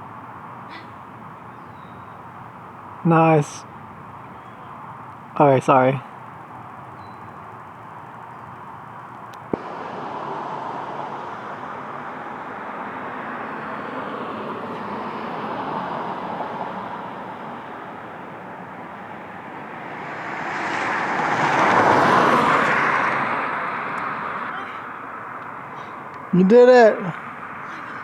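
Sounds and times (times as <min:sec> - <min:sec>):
outdoor background noise: 0:00.0 - 0:28.0
vehicle passing: 0:09.5 - 0:28.0.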